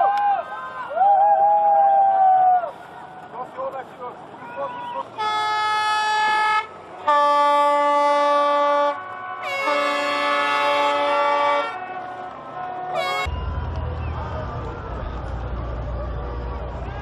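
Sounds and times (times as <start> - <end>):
horns blasting: 5.1 - 14.1.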